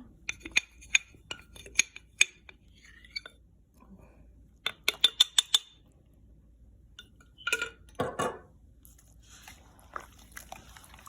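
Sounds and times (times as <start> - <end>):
utensils clinking against bowl: 0.2 - 3.3.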